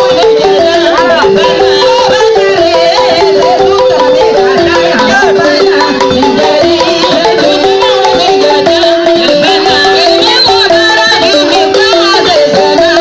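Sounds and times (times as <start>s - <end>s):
balafon music: 0.0s - 13.0s.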